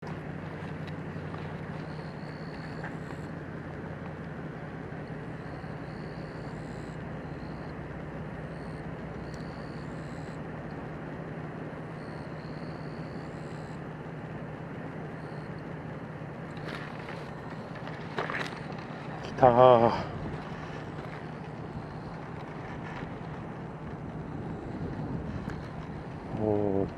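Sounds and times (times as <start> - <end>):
constant rushing noise: 0.0 - 5.6, 16.4 - 26.9
low engine-like hum: 0.0 - 26.9.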